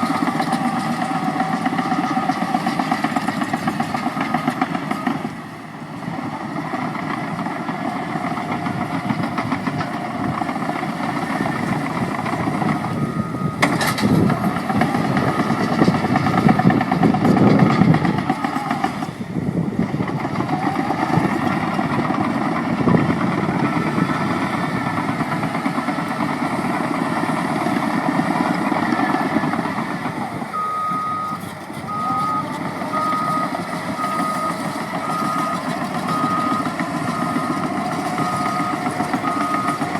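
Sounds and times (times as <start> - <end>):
diesel track loader engine: 0.0 - 39.9
reversing alarm beeping: 4.1 - 5.4, 11.1 - 19.0, 23.5 - 24.9, 30.3 - 39.9.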